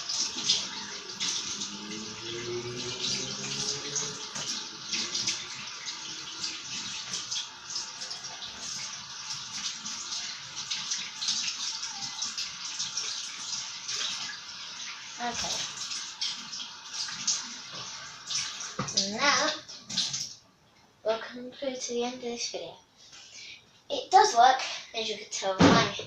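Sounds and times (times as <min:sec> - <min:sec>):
hands washing under water: 0:00.0 - 0:20.4
tap water running: 0:00.0 - 0:20.5.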